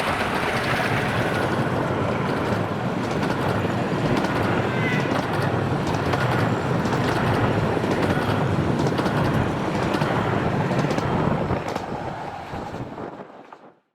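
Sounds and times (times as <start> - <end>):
sharp rail clicks: 0.0 - 12.0
miniature train rumbling: 0.0 - 13.6.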